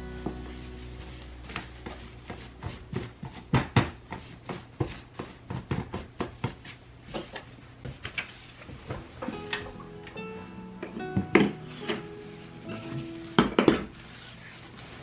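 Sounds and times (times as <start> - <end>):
household objects knocking and clicking: 1.6 - 6.6.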